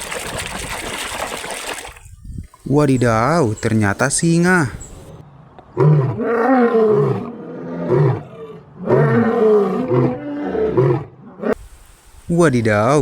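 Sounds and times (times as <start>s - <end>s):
lion roaring: 5.8s - 11.6s.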